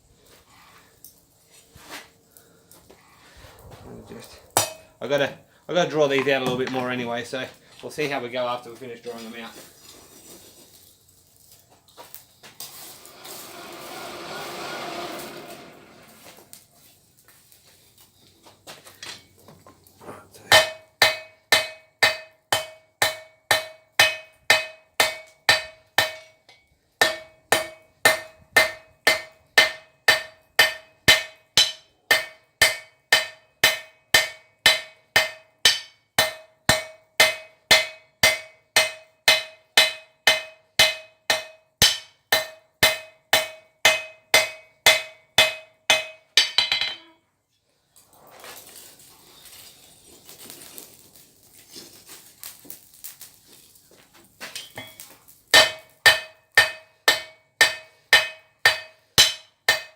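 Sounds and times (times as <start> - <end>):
hammer striking steel on anvil: 4.6 - 5.0, 20.5 - 47.2, 54.6 - 59.9.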